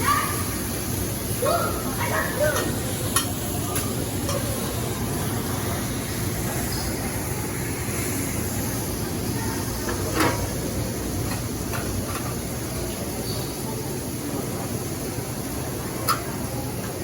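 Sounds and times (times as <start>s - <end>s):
busy shop counter hum: 0.0s - 17.0s.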